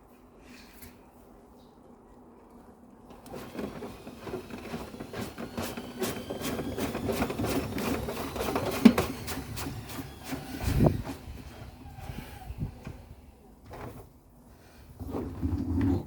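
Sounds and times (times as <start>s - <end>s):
washing machine drum turning: 3.2s - 12.0s
rapid knocking and rattling: 3.3s - 11.4s.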